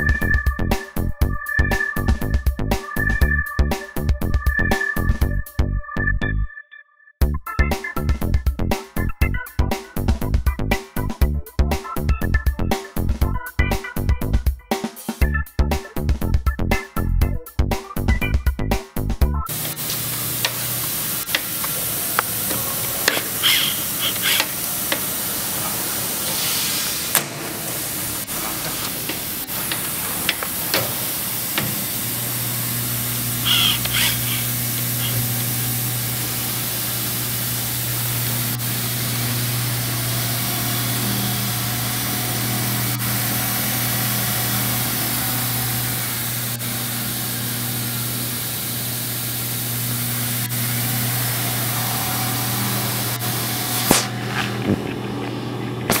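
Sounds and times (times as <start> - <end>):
clicks: 19.5 - 23.4, 27.1 - 32.0
belt grinder hissing: 19.5 - 54.6
motor humming: 19.5 - 56.0.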